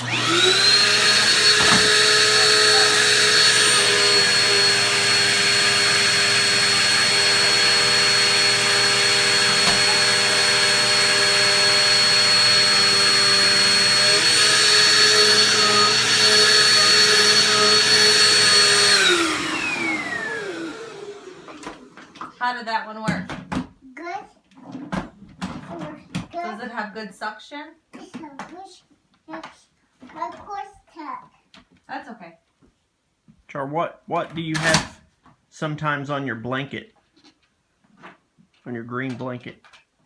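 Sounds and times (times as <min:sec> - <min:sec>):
vacuum cleaner motor whine: 0:00.0 - 0:22.3.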